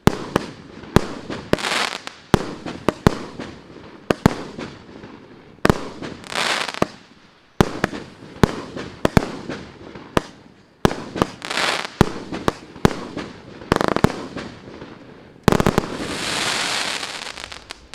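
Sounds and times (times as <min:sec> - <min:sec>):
crackling hiss of fireworks: 0:00.0 - 0:17.9
fireworks bangs: 0:07.6 - 0:17.9.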